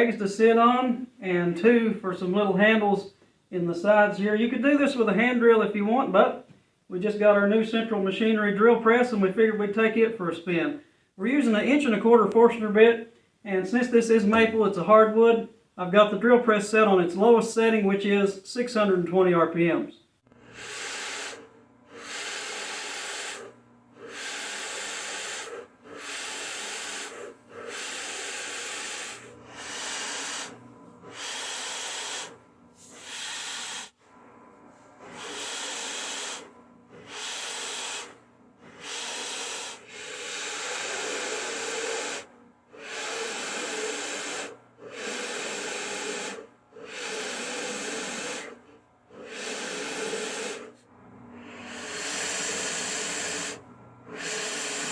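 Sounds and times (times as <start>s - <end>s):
drill press boring wood: 20.4s - 34.1s, 34.9s - 54.9s
cutting hiss: 20.5s - 34.1s, 34.7s - 48.6s, 49.2s - 50.8s, 51.4s - 54.9s.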